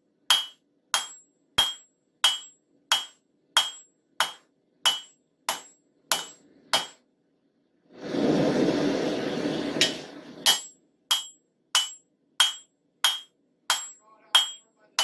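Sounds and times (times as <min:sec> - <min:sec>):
hammer striking metal on anvil: 0:00.3 - 0:07.0, 0:09.8 - 0:15.0
loud rushing noise: 0:08.0 - 0:10.4.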